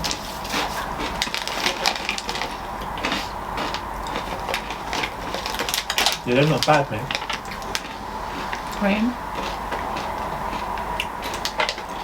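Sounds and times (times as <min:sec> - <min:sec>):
chewing crunchy peanuts: 0:00.0 - 0:12.0.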